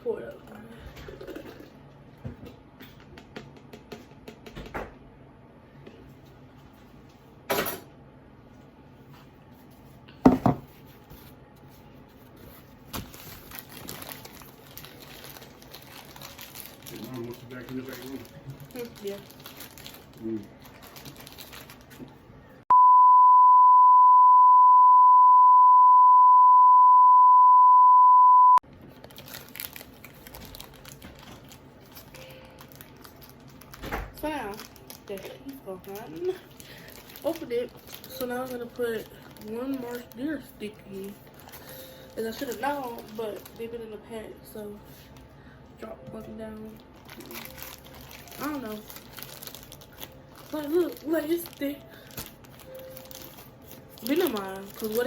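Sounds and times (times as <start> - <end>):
drink pouring: 1.1 - 1.8
steady beep tone: 22.7 - 28.6.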